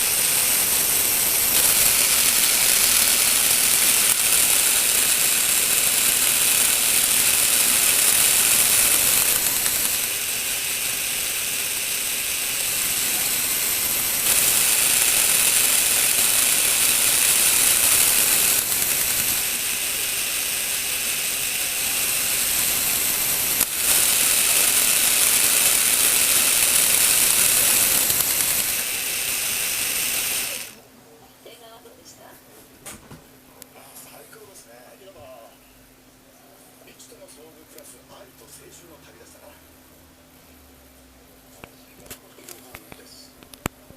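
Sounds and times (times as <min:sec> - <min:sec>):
plastic gear mechanism whirring: 0:00.0 - 0:30.8.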